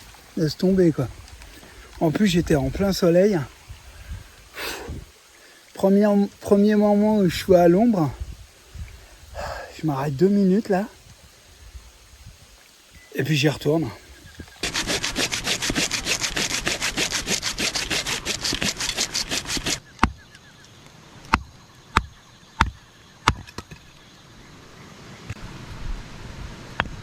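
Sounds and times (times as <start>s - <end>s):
hand saw cutting wood: 14.6s - 20.0s
sharp knocks: 21.3s - 23.8s.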